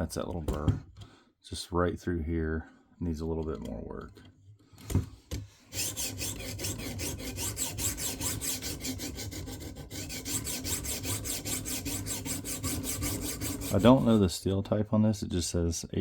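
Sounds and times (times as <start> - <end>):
sharpening stone rasping on knife: 5.8 - 14.2.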